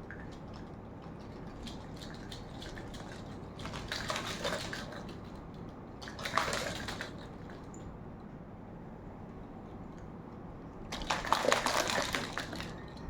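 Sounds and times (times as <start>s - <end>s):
water splashing: 0.0s - 5.4s, 6.0s - 7.6s, 10.9s - 13.0s.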